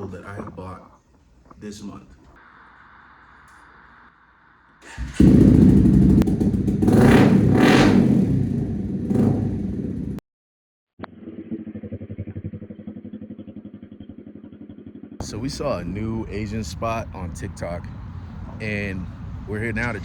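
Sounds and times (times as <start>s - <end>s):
motorcycle engine revving: 4.8s - 10.2s, 11.1s - 20.0s
engine idling: 4.9s - 10.2s, 13.7s - 20.0s.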